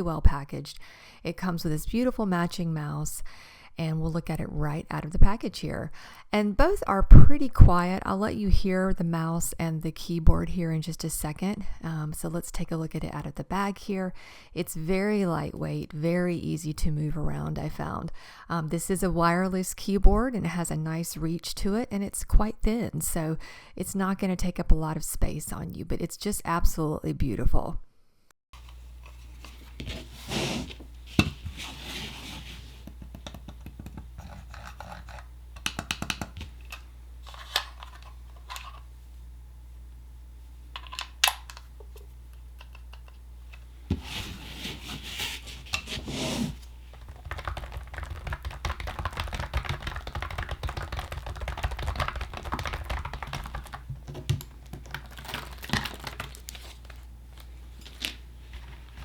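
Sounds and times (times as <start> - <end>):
handling rustles and knocks: 28.6 - 38.9
keyboard typing: 47.0 - 56.4.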